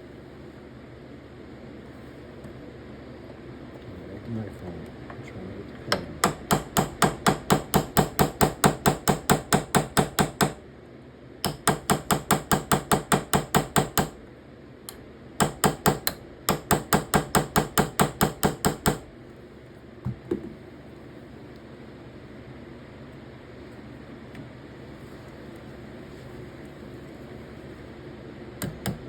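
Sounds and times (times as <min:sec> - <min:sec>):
hammer tapping on metal pins: 0:05.9 - 0:10.6, 0:11.4 - 0:14.2, 0:15.4 - 0:19.0.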